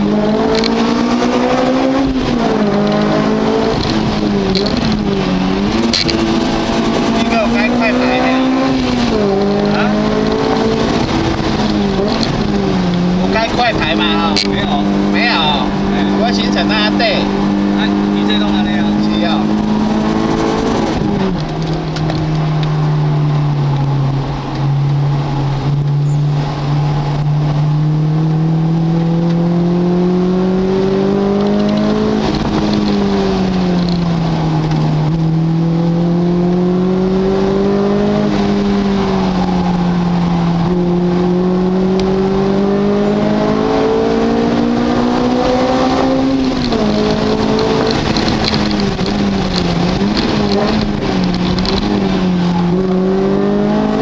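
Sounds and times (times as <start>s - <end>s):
car engine revving: 0.0s - 54.0s.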